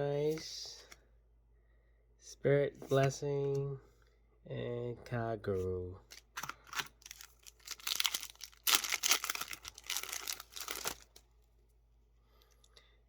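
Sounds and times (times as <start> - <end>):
foil wrapper tearing and crinkling: 6.4 - 11.2.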